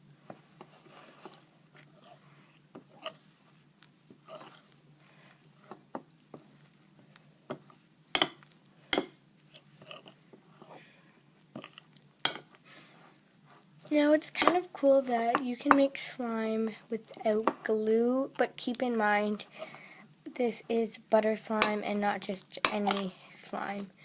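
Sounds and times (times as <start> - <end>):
knife scraping a bowl: 0.6 - 3.6, 4.2 - 4.8, 8.2 - 10.8.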